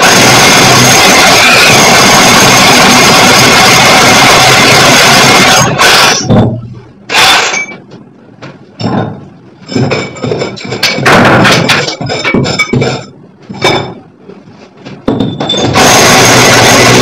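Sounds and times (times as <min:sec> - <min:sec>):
loud music: 0:00.0 - 0:06.3, 0:15.8 - 0:17.0
electric drill boring into brick: 0:00.0 - 0:06.4, 0:07.1 - 0:07.7, 0:15.6 - 0:17.0.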